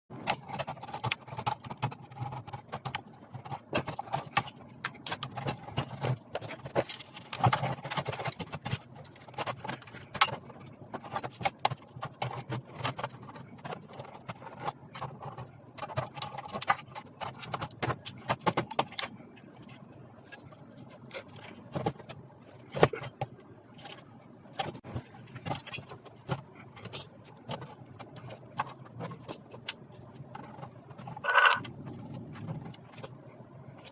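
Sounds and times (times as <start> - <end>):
tools clicking and knocking: 24.6 - 31.7.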